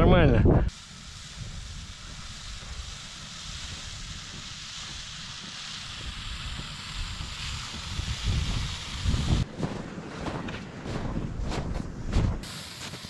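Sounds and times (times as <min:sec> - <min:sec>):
wind buffeting microphone: 0:00.0 - 0:00.7, 0:06.0 - 0:12.5.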